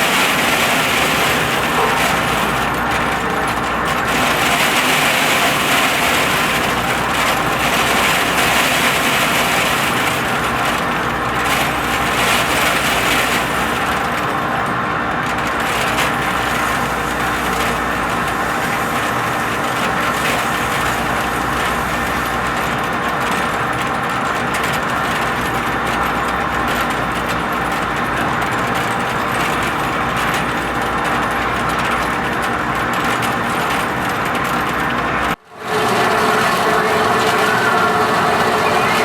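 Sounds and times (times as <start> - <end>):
metal lathe running: 0.0 - 25.1, 34.8 - 39.0.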